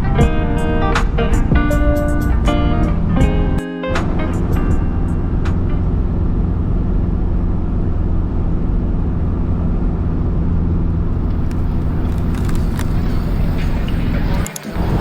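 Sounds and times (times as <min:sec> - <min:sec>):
vehicle engine and road noise: 0:04.0 - 0:15.0.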